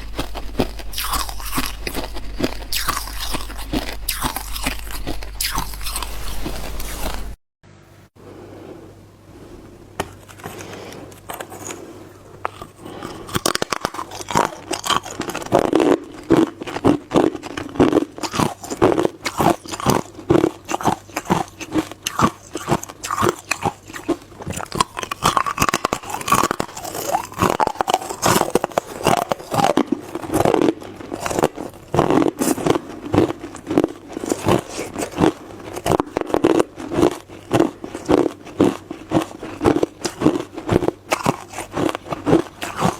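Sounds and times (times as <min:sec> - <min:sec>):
ice crunching in mouth: 0:00.0 - 0:07.4, 0:10.2 - 0:42.9.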